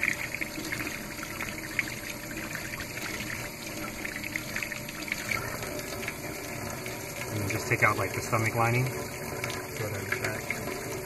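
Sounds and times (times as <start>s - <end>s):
tap water splashing over fish: 7.2s - 11.0s.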